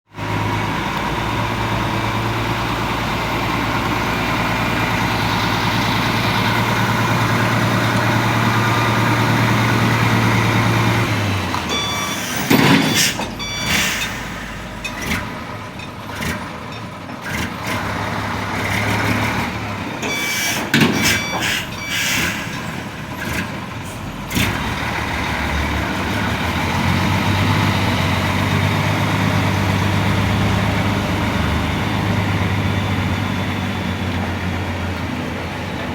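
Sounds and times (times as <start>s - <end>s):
diesel engine running: 0.1s - 35.9s
short hisses: 20.2s - 22.8s.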